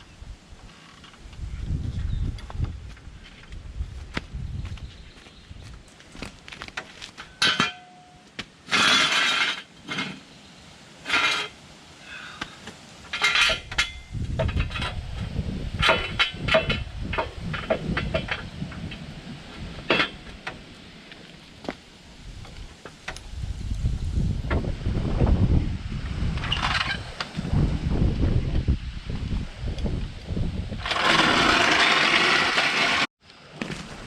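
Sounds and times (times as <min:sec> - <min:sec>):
metal tools clinking and clanking: 0:07.2 - 0:10.2, 0:11.1 - 0:11.6, 0:13.1 - 0:15.0.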